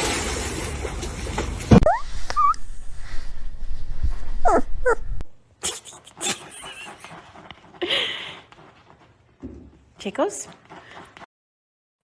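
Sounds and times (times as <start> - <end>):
dog whining: 4.4 - 7.4
rustling: 5.7 - 11.3.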